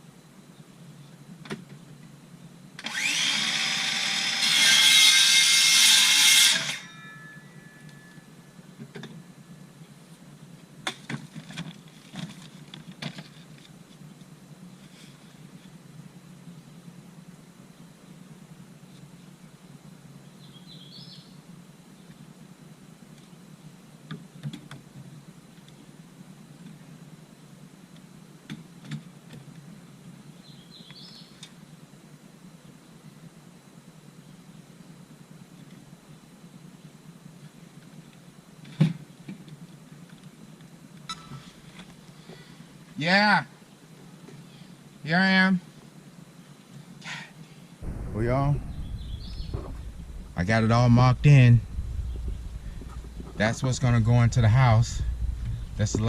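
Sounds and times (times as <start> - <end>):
sharp knocks: 47.8 - 56.0
steady low hum: 47.8 - 56.0.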